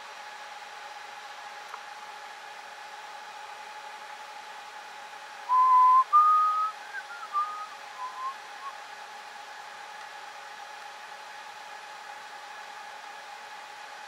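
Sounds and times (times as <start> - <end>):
server cooling fans whirring: 0.0 - 14.0
person whistling: 5.5 - 8.7.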